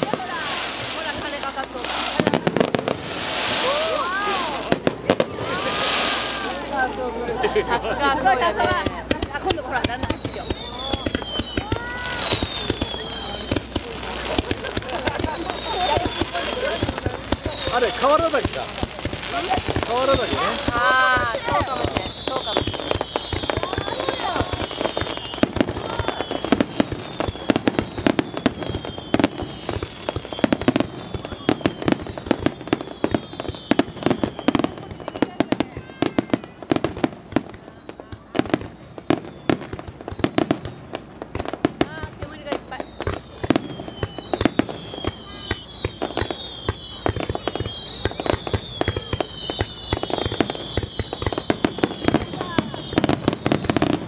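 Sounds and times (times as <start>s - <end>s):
fireworks bangs and crackling: 0.0s - 54.0s
faint falling whistle: 8.6s - 13.7s, 14.3s - 36.5s, 37.3s - 40.9s, 41.9s - 54.0s.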